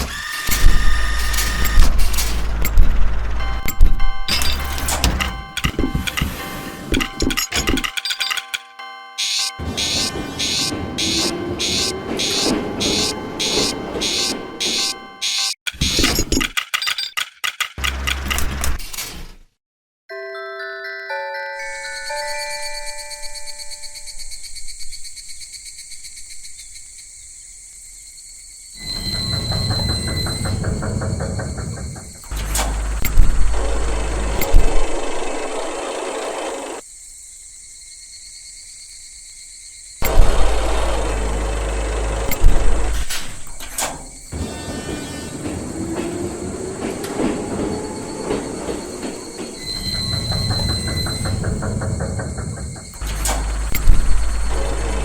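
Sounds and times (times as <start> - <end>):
train rumbling and clattering: 0.5 - 8.0, 9.6 - 15.2, 28.8 - 36.8, 40.0 - 55.0
insects chirping: 21.9 - 55.0.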